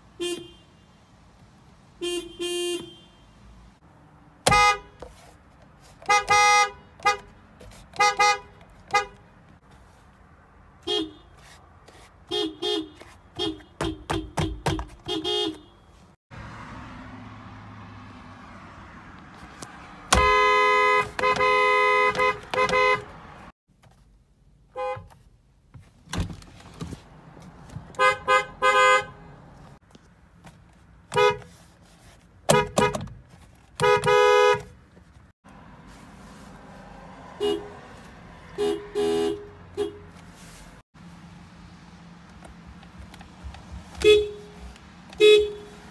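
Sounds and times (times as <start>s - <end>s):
road noise: 0.0s - 45.9s
car horns honking: 0.1s - 1.0s, 2.0s - 3.4s, 4.4s - 5.2s, 6.0s - 9.4s, 10.8s - 11.6s, 12.2s - 16.2s, 20.0s - 23.5s, 24.7s - 25.2s, 27.8s - 29.7s, 31.1s - 31.6s, 32.4s - 34.8s, 37.3s - 40.3s, 43.9s - 45.9s.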